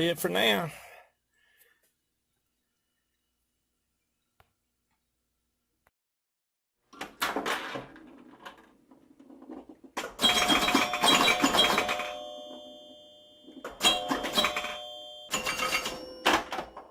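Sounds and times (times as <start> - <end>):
bell-like chimes ringing: 10.2 - 16.9.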